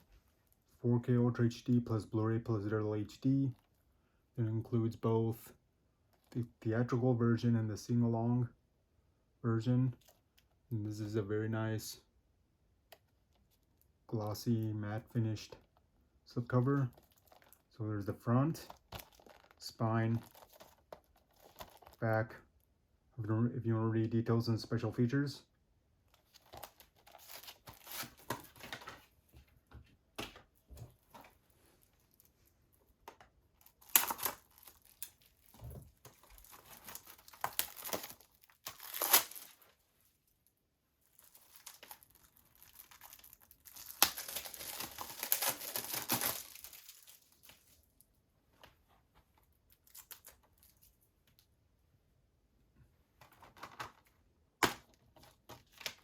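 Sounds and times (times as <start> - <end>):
plastic shrink wrap tearing: 33.6 - 39.6, 41.1 - 47.8.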